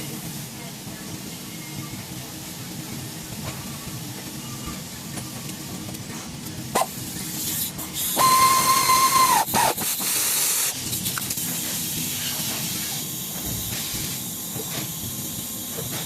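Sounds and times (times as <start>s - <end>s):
loud steady hiss: 6.8s - 16.0s
high whistling tone: 8.2s - 9.5s.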